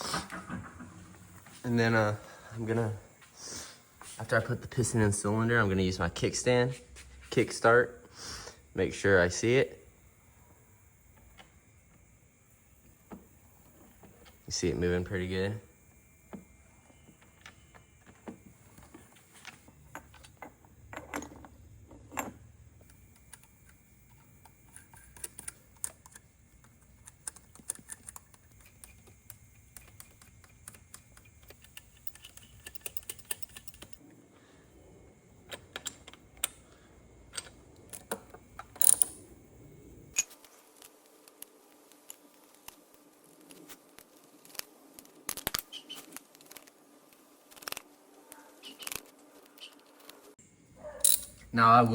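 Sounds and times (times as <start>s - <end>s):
metal tools clicking and tapping: 17.2s - 34.0s, 35.5s - 36.6s, 37.3s - 39.2s, 50.9s - 51.5s.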